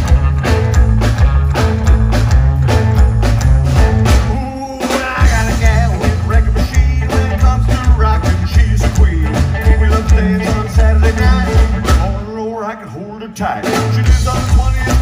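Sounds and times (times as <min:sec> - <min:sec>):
upright bass pulsing: 0:00.0 - 0:12.6, 0:13.6 - 0:15.0
live rockabilly band: 0:00.0 - 0:15.0.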